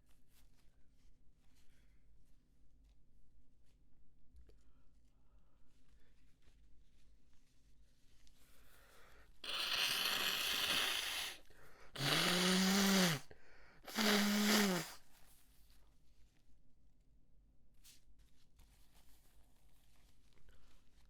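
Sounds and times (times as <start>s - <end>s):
noisy rush of breath: 8.7s - 15.0s
honking nose blasts: 12.0s - 13.2s, 13.9s - 15.0s.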